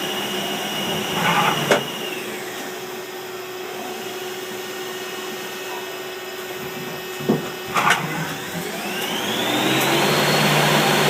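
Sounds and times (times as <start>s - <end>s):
machine hum: 0.0s - 11.0s
lathe whooshing: 0.5s - 3.9s, 6.5s - 11.0s
sharp knocks: 6.6s - 8.0s.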